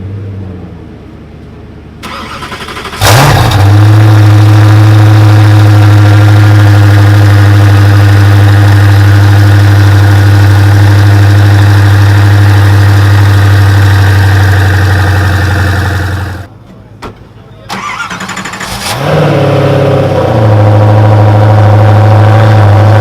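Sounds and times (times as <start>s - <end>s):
starter motor cranking: 2.0s - 4.0s
car engine idling loudly: 2.5s - 16.5s.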